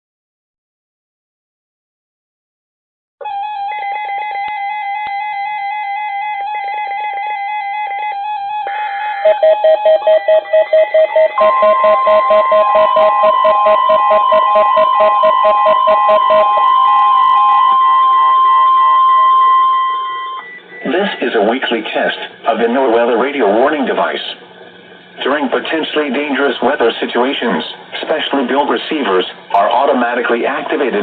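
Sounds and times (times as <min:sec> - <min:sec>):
steady warning tone: 0:03.2 - 0:31.0
electronic beeps and warbling chirps: 0:08.7 - 0:21.4
fast-pulsing beep: 0:09.2 - 0:21.7.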